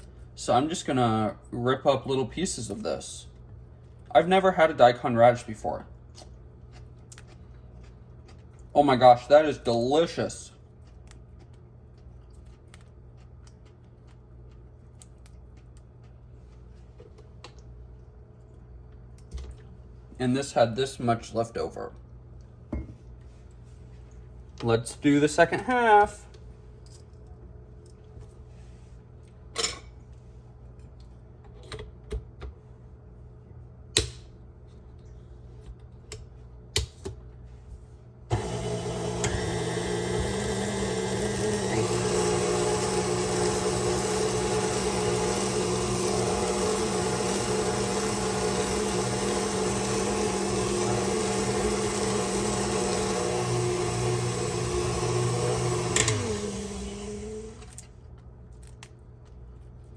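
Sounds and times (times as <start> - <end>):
stand mixer motor running: 38.3 - 57.7.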